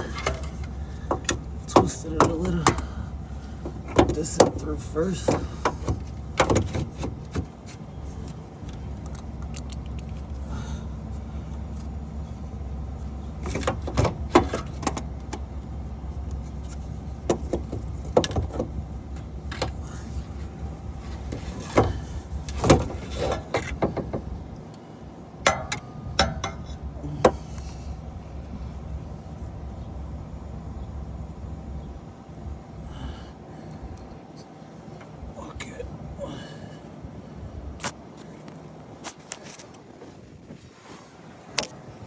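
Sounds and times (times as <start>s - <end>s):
metal tools clinking and scraping: 0.0s - 2.9s
steady low hum: 0.0s - 42.0s.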